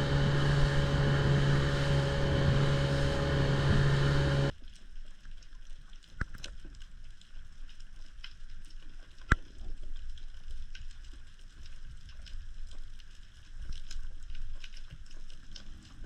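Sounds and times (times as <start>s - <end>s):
motorboat engine running: 0.0s - 4.5s
faint clicks and crackles: 4.1s - 16.0s.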